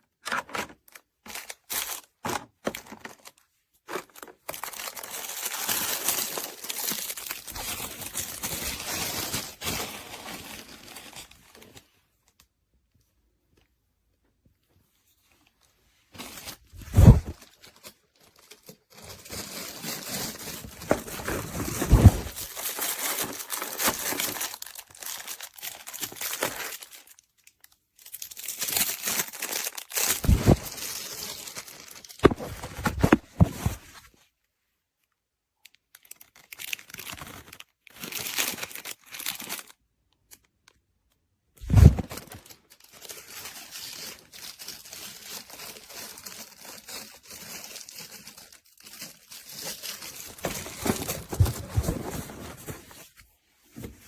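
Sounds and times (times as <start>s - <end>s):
rustling and crinkling: 14.7s - 27.0s, 29.9s - 34.2s, 41.6s - 54.0s
sharp thuds: 16.8s - 17.4s.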